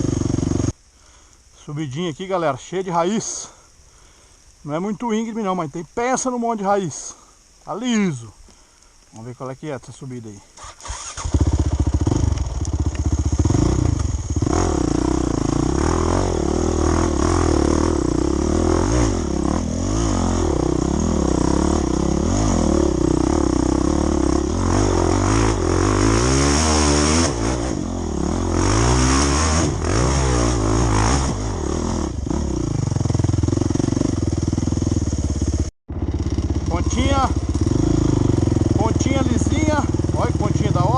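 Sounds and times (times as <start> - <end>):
motorcycle engine revving: 0.0 - 0.8, 10.6 - 40.9.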